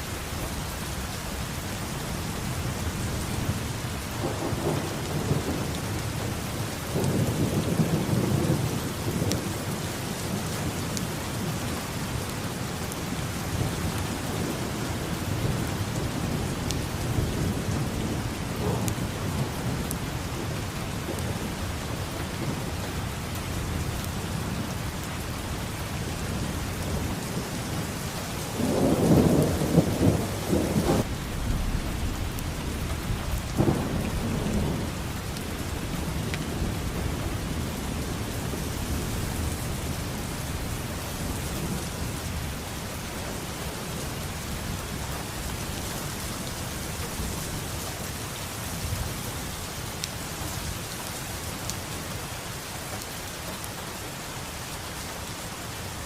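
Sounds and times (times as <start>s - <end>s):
steady rain falling: 0.0s - 56.0s
thunder rolling: 16.2s - 21.6s, 26.3s - 42.1s.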